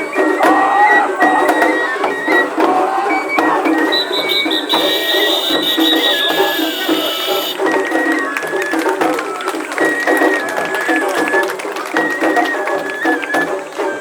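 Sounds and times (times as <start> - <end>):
drum strokes: 0.2 - 14.0
high held melody: 3.7 - 8.2.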